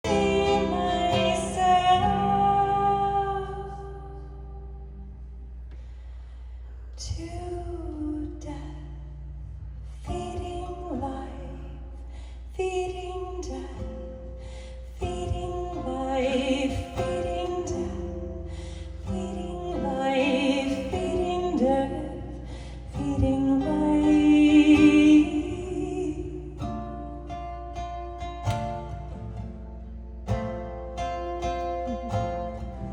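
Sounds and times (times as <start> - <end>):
woman singing with vibrato: 0.0 - 5.0, 7.0 - 9.2, 10.0 - 14.2, 14.8 - 26.9.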